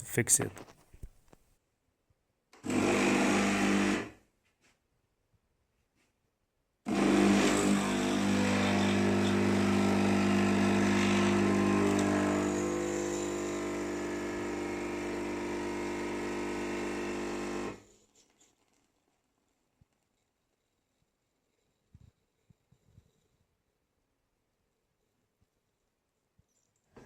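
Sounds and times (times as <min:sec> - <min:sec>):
espresso machine buzzing hum: 0:06.9 - 0:17.8.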